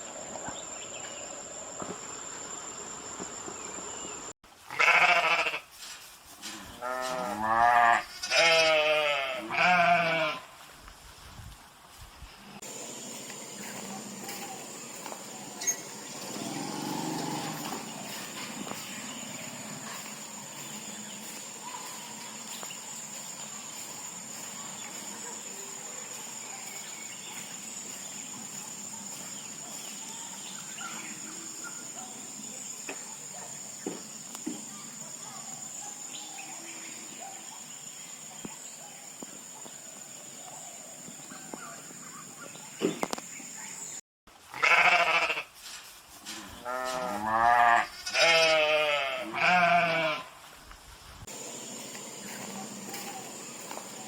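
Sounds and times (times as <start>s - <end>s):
sheep or goats bleating: 4.7s - 5.7s, 6.8s - 10.5s, 44.5s - 45.5s, 46.6s - 50.4s
steady hiss: 10.6s - 31.6s, 50.3s - 54.0s.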